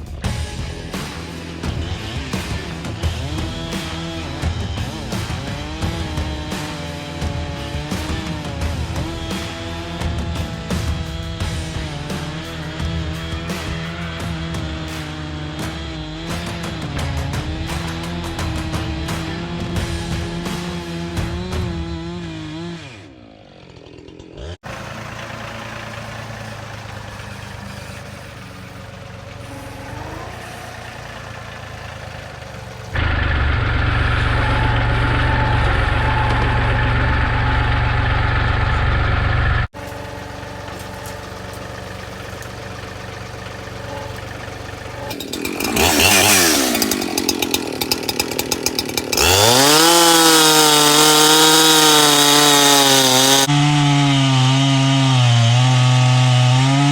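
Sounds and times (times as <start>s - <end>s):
chainsaw cutting wood: 0.0s - 56.9s.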